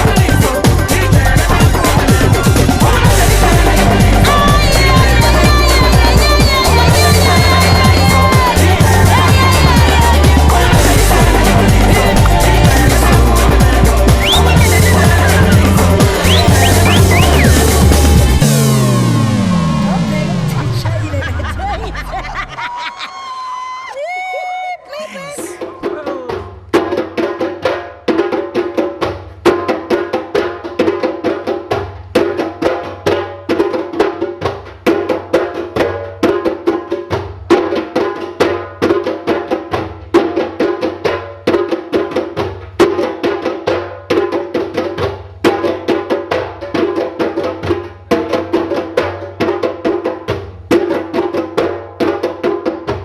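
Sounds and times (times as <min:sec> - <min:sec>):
percussive music wooden strikes: 0:00.0 - 0:20.0.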